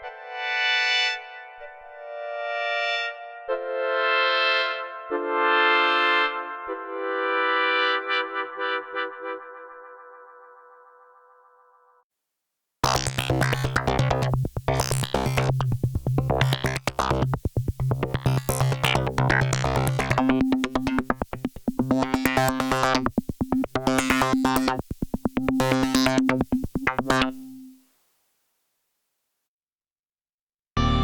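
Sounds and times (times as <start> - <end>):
held synth bass note: 12.8 - 27.7, 30.8 - 31.0
pulsing synthesizer pattern: 12.8 - 27.7.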